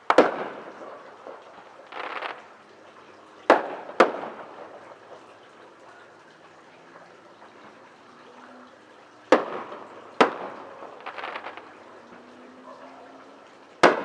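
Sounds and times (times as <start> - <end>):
firework bangs echoing: 0.0 - 2.5, 3.5 - 5.2, 9.3 - 11.7, 13.8 - 14.0.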